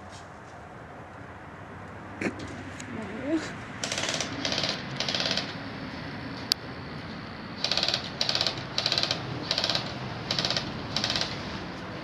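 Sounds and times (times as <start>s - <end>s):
airsoft gun full-auto bursts: 3.8s - 5.5s, 7.6s - 11.3s.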